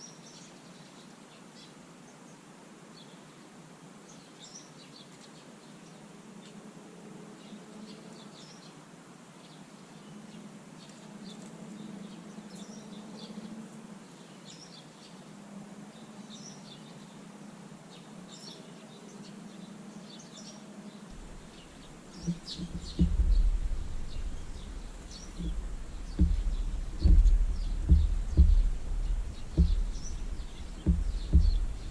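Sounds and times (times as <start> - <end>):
small birds chirping: 17.9 - 31.9
loud low thumps and rumbling: 21.1 - 31.9.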